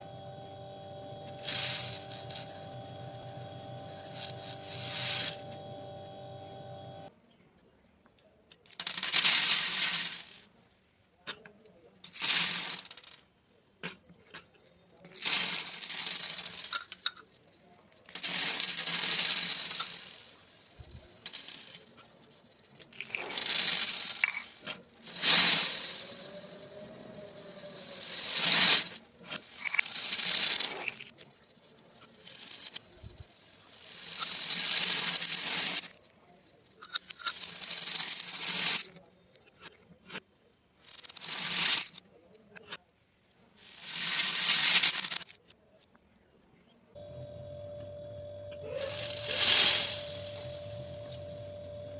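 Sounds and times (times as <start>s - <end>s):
steady hum: 0.0s - 7.1s, 47.0s - 51.9s
beads pouring with rattling patter: 1.3s - 5.5s, 15.2s - 16.9s, 18.1s - 22.0s, 22.7s - 26.5s, 27.6s - 31.2s, 32.0s - 36.0s, 37.1s - 38.9s, 40.8s - 42.0s, 43.6s - 45.4s, 48.8s - 51.9s.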